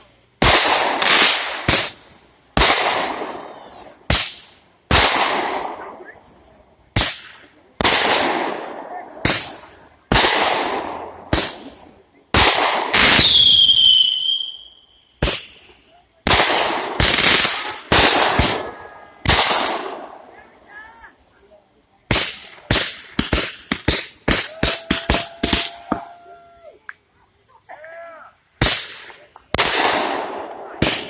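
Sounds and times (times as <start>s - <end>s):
fireworks banging: 0.0s - 21.2s, 22.0s - 27.0s, 28.6s - 31.0s
shrill whistle sliding down: 13.3s - 14.7s.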